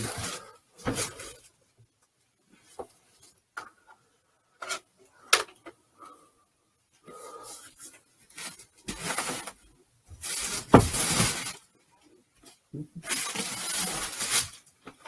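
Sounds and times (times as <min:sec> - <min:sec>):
rustling packaging: 0:07.8 - 0:11.8, 0:12.4 - 0:15.0.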